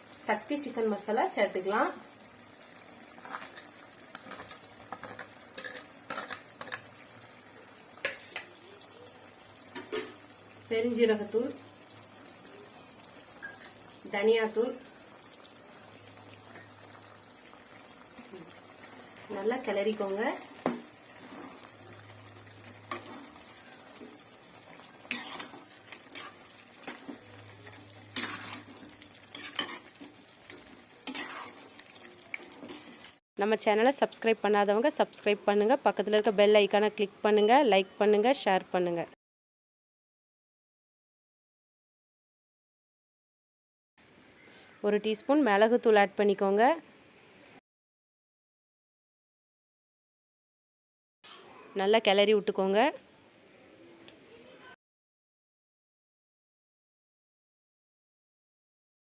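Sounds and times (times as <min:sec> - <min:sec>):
faint sizzle: 0:00.0 - 0:39.1, 0:44.0 - 0:47.6, 0:51.3 - 0:54.8
spoon scraping in pan: 0:03.1 - 0:07.0, 0:07.9 - 0:08.6, 0:09.6 - 0:10.4, 0:13.2 - 0:13.9, 0:19.1 - 0:33.2.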